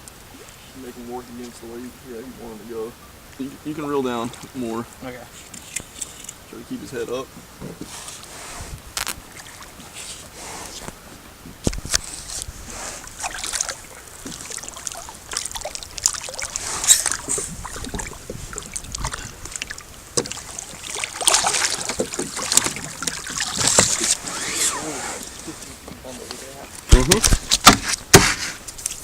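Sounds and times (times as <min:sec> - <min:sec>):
fish splashing in water: 0:12.0 - 0:25.5
knock on boat: 0:26.9 - 0:28.4.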